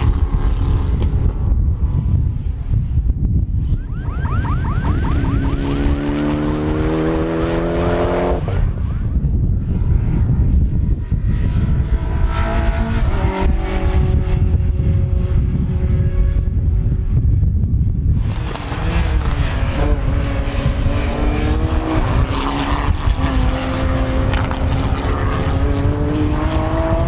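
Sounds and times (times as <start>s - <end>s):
wind buffeting microphone: 0.0s - 27.0s
rally car engine accelerating: 3.9s - 8.9s, 11.4s - 16.4s, 18.2s - 27.0s.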